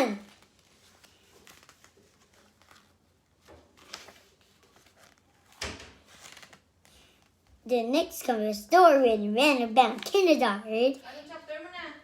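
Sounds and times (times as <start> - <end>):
book rustling and knocking: 0.4 - 7.4.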